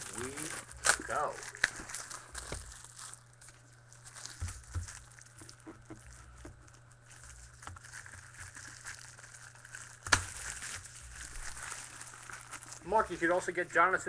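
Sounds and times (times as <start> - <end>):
wrapping crinkling: 0.0 - 14.0.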